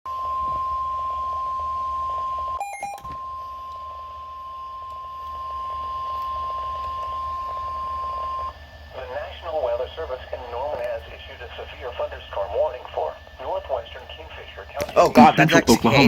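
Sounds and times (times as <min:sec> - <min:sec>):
warning alarm tone: 0:00.1 - 0:08.6
short beeps: 0:02.6 - 0:08.5.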